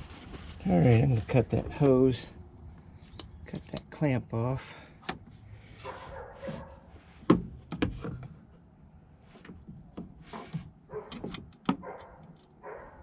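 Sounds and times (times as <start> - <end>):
rustling: 0.0 - 1.8, 5.5 - 7.3.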